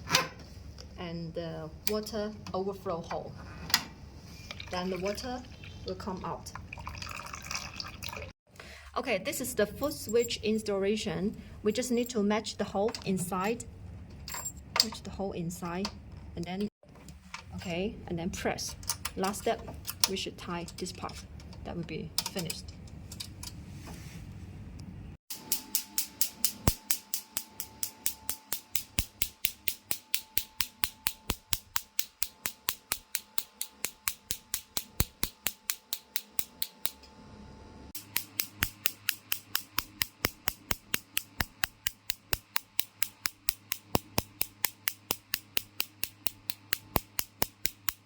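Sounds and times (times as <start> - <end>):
machine firing sharp clicks: 25.3 - 37.0, 38.0 - 48.0.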